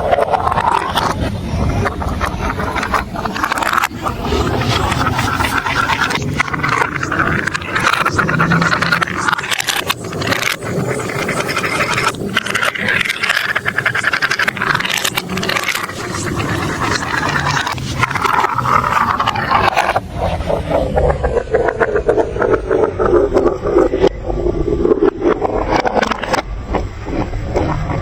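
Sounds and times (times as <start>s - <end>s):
marbles rolling on plastic track: 0.0s - 24.1s.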